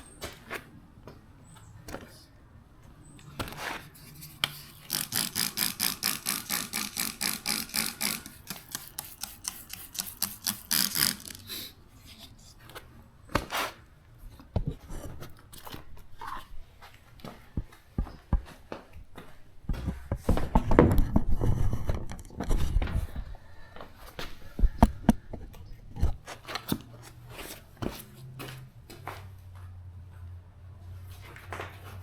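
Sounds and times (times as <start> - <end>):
spray bottle squirting: 4.6 - 11.7.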